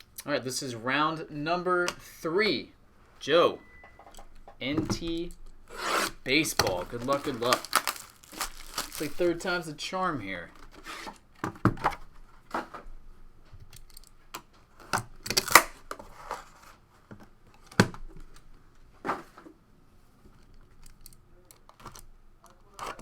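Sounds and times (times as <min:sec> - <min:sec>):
packaging tearing and crinkling: 0:05.7 - 0:09.5, 0:15.2 - 0:16.6.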